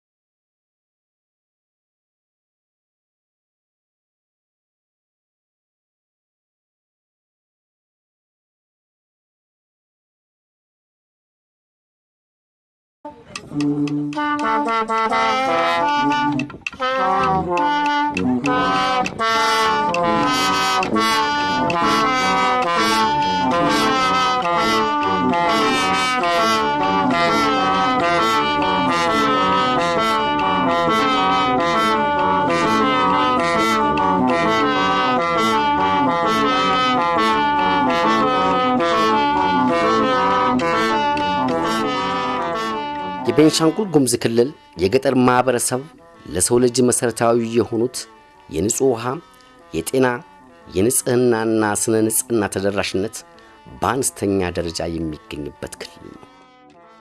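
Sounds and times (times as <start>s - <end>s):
brass instrumental music: 13.1s - 57.0s.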